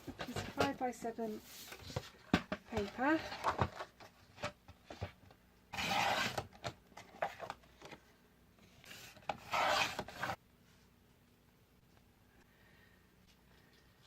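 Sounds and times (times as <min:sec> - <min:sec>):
paper being cut: 0:05.8 - 0:06.4, 0:09.4 - 0:10.4.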